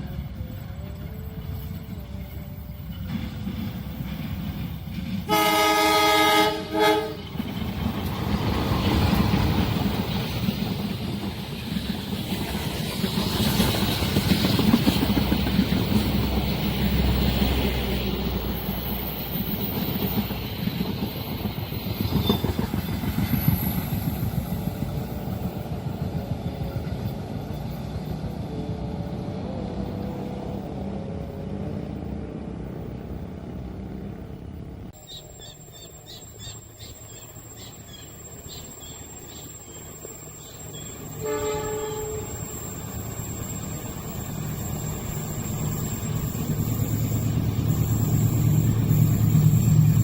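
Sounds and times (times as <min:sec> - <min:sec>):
train wheels clattering on rails: 0:01.0 - 0:28.6
train horn blast: 0:05.3 - 0:07.3, 0:41.1 - 0:42.7.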